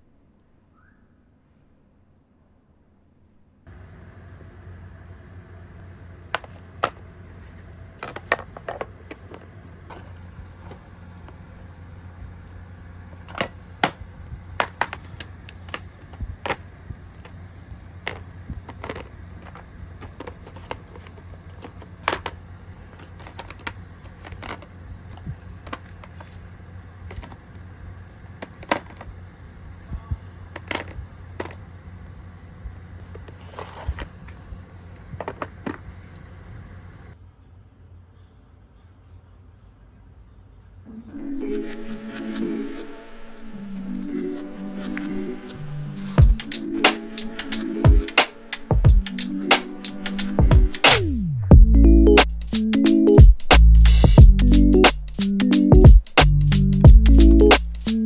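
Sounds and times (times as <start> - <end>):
steady low hum: 3.7 - 37.2, 40.9 - 58.0
small objects clicking and knocking: 6.2 - 11.6, 12.5 - 29.2, 30.4 - 31.7.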